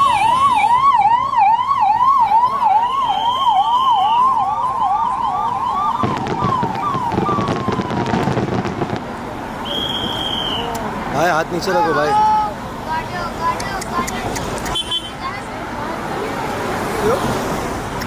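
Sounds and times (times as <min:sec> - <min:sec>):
siren yelping: 0:00.0 - 0:09.0
crowd noise: 0:00.0 - 0:18.0
traffic noise: 0:00.0 - 0:18.0.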